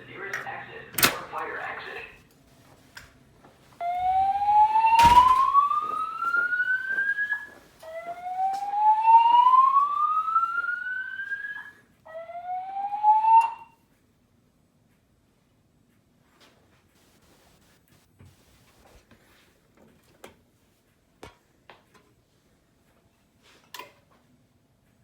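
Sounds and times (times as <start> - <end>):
fire alarm whoop tone: 3.8 - 13.8.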